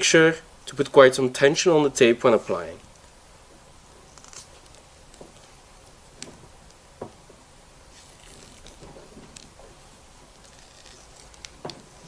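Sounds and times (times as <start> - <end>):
electrical tape rasping off roll: 4.0 - 12.0.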